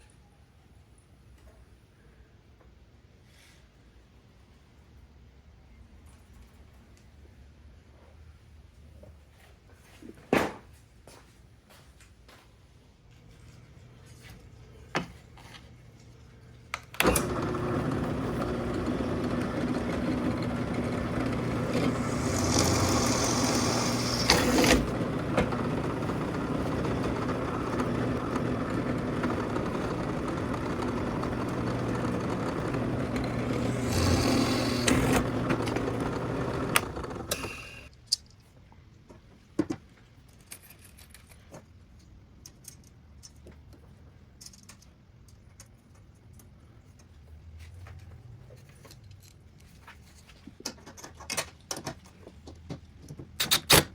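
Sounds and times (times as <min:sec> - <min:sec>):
power tool humming: 0:17.0 - 0:37.9.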